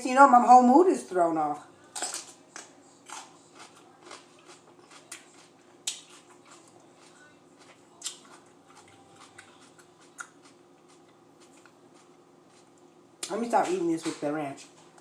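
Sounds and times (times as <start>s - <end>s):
crunching raw peppers: 1.8s - 13.4s.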